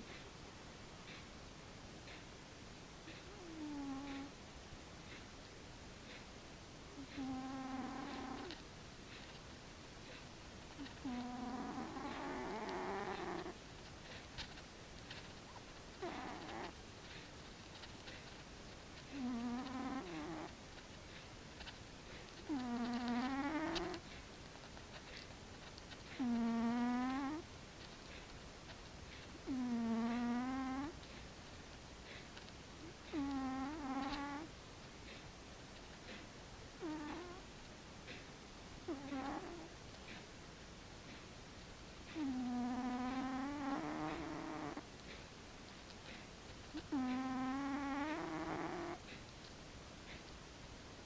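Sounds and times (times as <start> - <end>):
cat snoring: 3.1 - 4.4, 7.0 - 9.4, 10.0 - 28.4, 29.4 - 31.2, 32.1 - 34.5, 36.0 - 37.5, 38.1 - 40.3, 42.1 - 45.2, 46.1 - 49.2.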